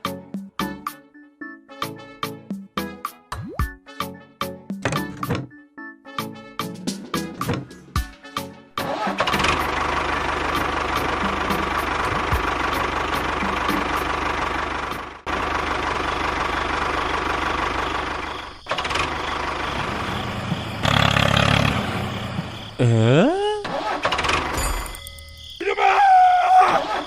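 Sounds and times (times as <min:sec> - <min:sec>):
engine running with fast beat: 0:08.8 - 0:22.6.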